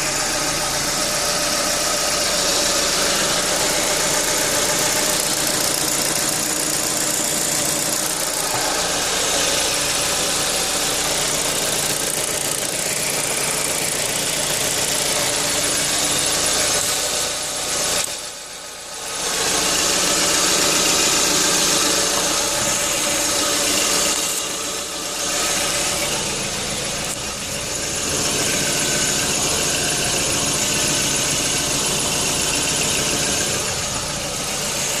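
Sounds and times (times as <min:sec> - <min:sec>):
engine running: 0:00.0 - 0:35.0.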